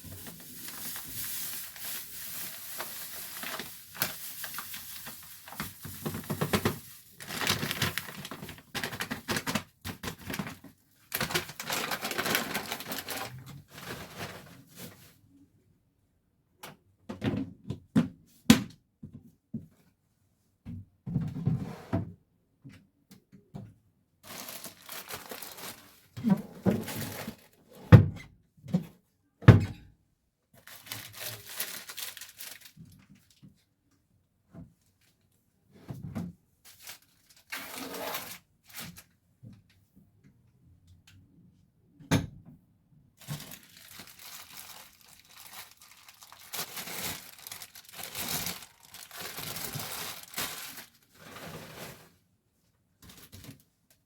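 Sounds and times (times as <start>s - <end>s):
plastic packaging crinkling: 0.0s - 14.0s, 24.2s - 27.6s, 30.6s - 33.0s, 36.7s - 39.0s, 43.2s - 51.2s.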